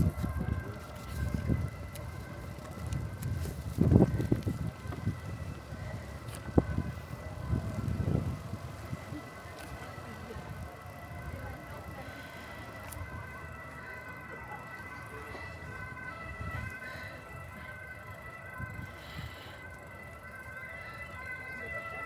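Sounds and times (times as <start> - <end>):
wind noise on microphone: 0.0 - 11.6, 15.6 - 17.0, 18.5 - 19.4.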